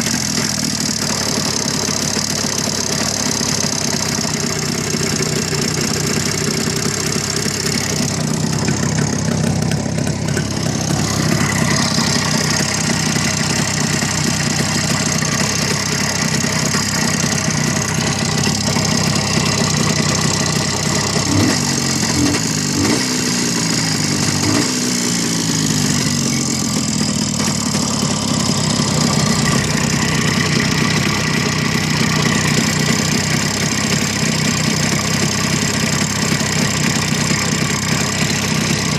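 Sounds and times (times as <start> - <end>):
engine knocking: 0.0 - 38.9
motorcycle engine idling and revving: 0.0 - 38.9.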